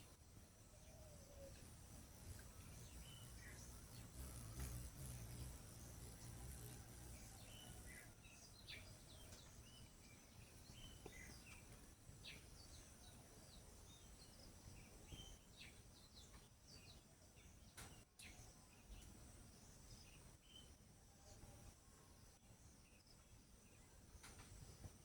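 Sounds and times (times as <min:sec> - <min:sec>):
faint bird chirps: 0:00.0 - 0:25.0
high-pitched insect trill: 0:01.2 - 0:08.2.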